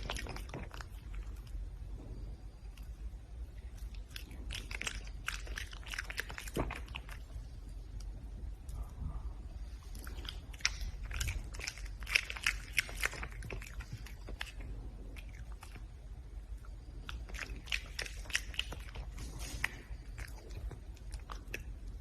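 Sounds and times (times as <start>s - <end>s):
red panda crunching food: 0.0s - 1.6s, 3.6s - 8.1s, 9.8s - 15.9s, 16.8s - 22.0s.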